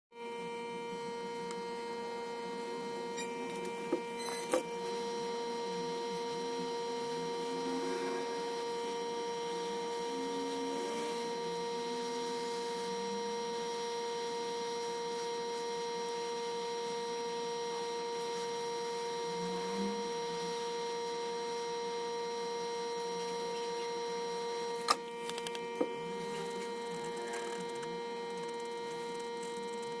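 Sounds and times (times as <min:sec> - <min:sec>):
electrical hum: 0:00.2 - 0:30.0
high whine: 0:00.2 - 0:30.0.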